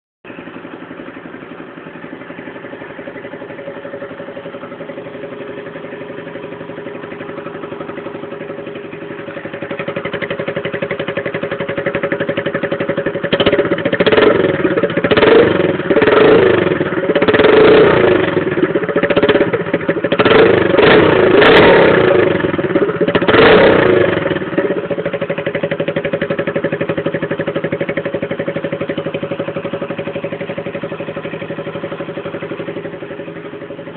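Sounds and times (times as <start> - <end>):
motorcycle engine idling: 0.2 - 33.9
engine revving: 5.6 - 24.9.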